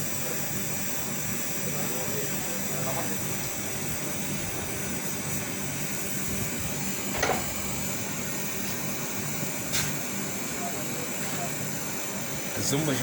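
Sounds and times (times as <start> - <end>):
machine hum: 3.2 - 9.4
short knock: 7.2 - 7.6.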